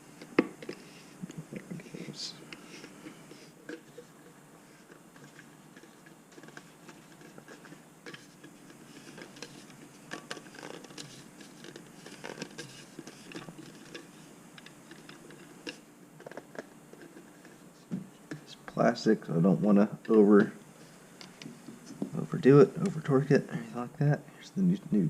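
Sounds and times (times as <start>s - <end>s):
metal fitting scraping on plastic threads: 2.5s - 17.6s.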